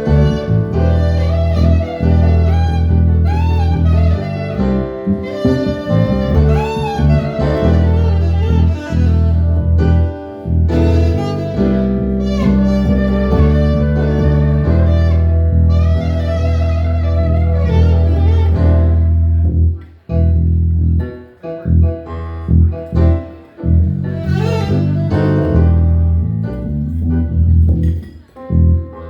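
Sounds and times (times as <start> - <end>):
short choppy notes: 0.0 - 20.3
sustained instrumental melody: 0.0 - 20.8, 21.7 - 27.6
heavy bass line: 0.0 - 29.0.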